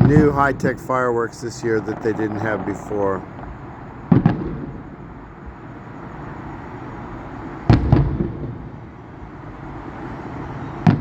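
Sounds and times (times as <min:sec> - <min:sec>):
distant fireworks booming: 0:00.0 - 0:11.0.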